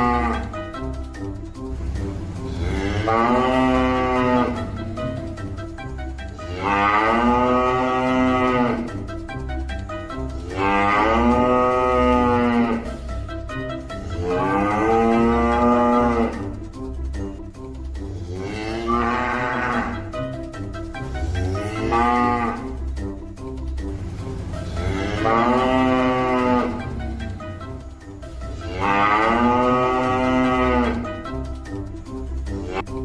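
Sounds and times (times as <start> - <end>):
cow mooing: 0.0 - 1.3, 1.9 - 9.3, 10.2 - 16.6, 18.0 - 23.1, 23.8 - 31.4
background music with a beat: 0.0 - 33.0.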